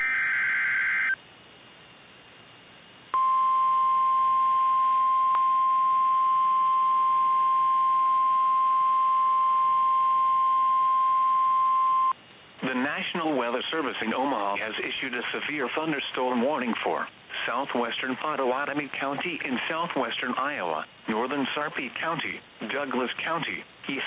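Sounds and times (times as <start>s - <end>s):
warbling data screech: 0.0s - 1.2s.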